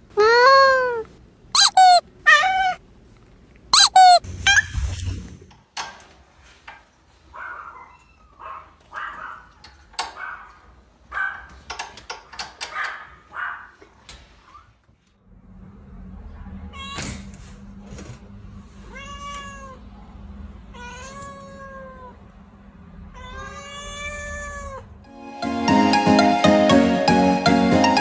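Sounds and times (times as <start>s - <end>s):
dog yipping: 1.6s - 2.8s, 3.8s - 4.7s, 7.4s - 9.5s, 11.1s - 11.5s, 12.6s - 13.7s.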